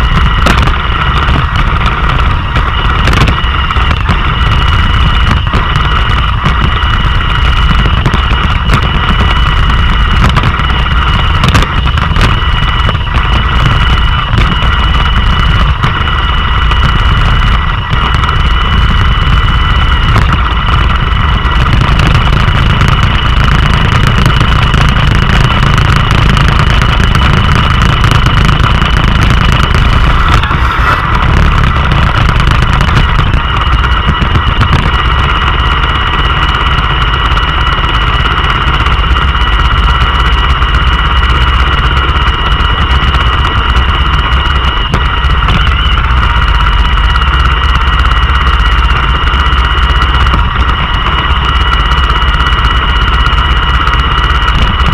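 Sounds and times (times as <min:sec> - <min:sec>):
robot vacuum running: 0:24.6 - 0:37.9.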